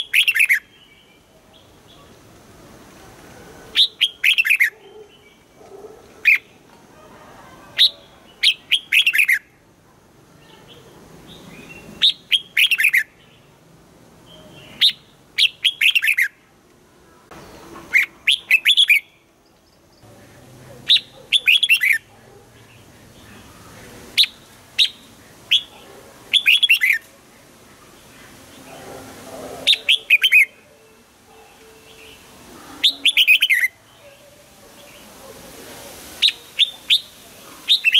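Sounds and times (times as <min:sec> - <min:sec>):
bird singing quick phrases: 0:00.0 - 0:01.2, 0:10.7 - 0:13.4, 0:14.3 - 0:16.3, 0:17.3 - 0:19.2, 0:20.9 - 0:23.5, 0:24.2 - 0:27.0, 0:31.8 - 0:34.1, 0:37.7 - 0:37.9.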